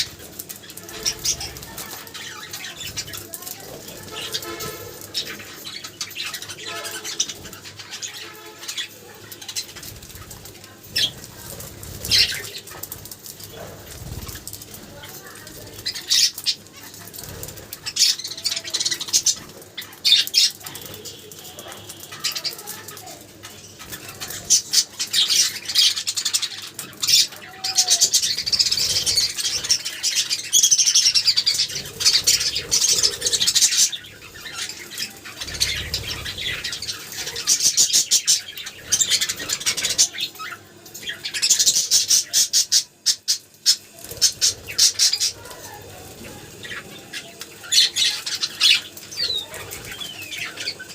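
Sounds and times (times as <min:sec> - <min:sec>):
budgerigars chirping and warbling: 0:00.0 - 0:50.9.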